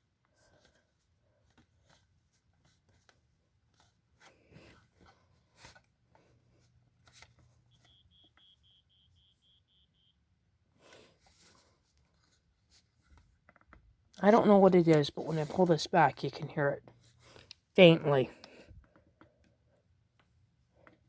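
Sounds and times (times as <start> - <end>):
smoke detector high beeps: 7.7 - 10.2.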